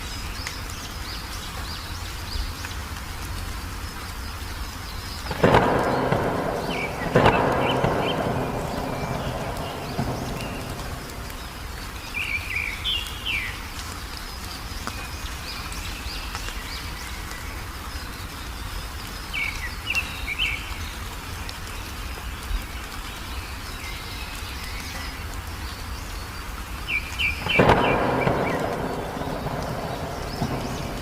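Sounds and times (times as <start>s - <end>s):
songbirds chirping: 0.0s - 31.0s
low background rumble: 4.8s - 12.4s.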